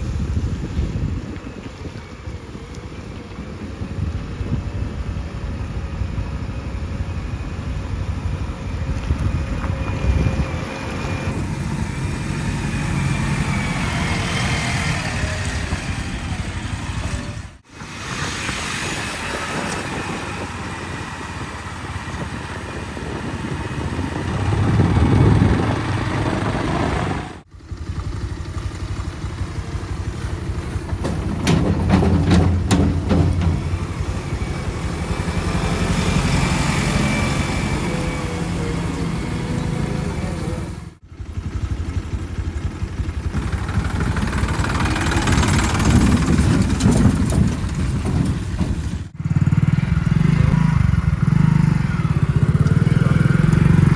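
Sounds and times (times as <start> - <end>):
diesel engine revving: 8.4 - 53.9
rattling clatter: 30.4 - 35.0, 43.4 - 49.1.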